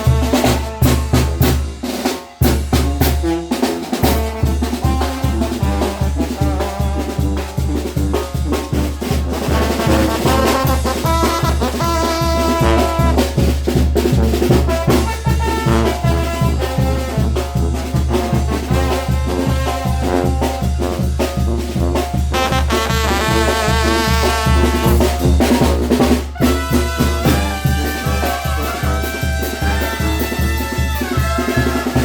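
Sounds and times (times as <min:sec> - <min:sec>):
tuba bass: 0:00.0 - 0:01.8, 0:02.4 - 0:32.0
brass band playing: 0:00.0 - 0:32.0
drums on a steady beat: 0:00.0 - 0:32.0.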